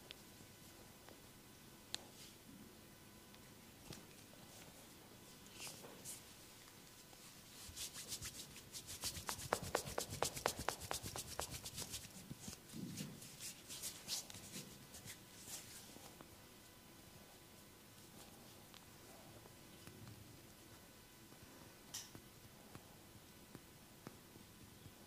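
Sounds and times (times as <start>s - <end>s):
hands rubbing and striking skin: 7.6s - 12.6s, 13.2s - 15.2s.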